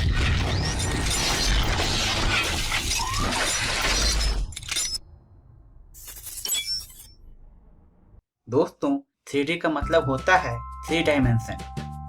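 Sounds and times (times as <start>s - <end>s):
glass shattering crash: 6.0s - 7.2s.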